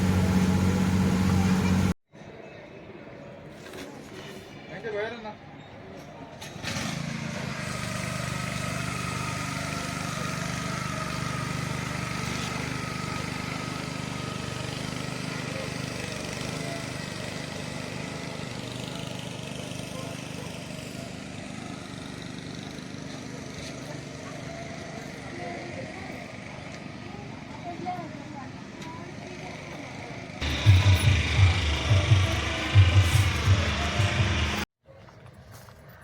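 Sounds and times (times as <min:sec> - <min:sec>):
engine running steadily: 0:00.0 - 0:02.0, 0:06.8 - 0:34.7.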